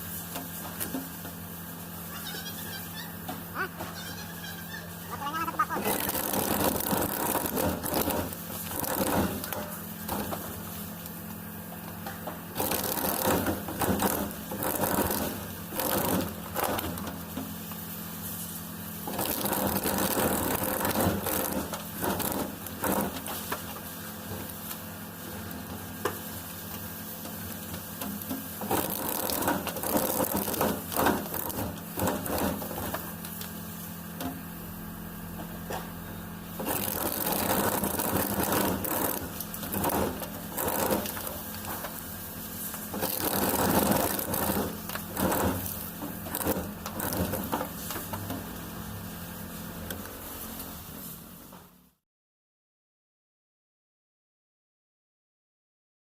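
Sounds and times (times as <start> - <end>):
machine motor humming: 1.8 - 10.1
blade scraping and grating: 3.6 - 9.7, 12.6 - 17.0, 36.6 - 48.0.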